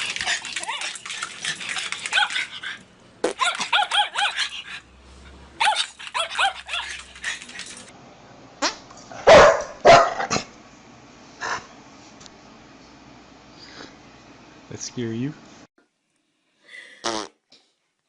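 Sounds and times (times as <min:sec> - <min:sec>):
dog barking and yipping: 0:01.8 - 0:02.8, 0:03.4 - 0:04.8, 0:05.6 - 0:07.7, 0:09.2 - 0:10.4.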